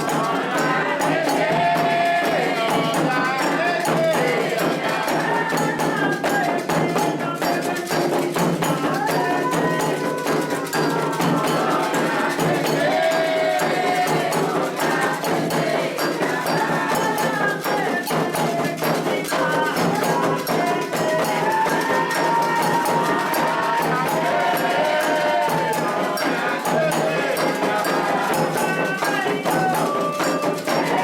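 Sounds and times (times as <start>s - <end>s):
hand drums: 0.0s - 31.0s
voices singing a chant: 0.0s - 31.0s.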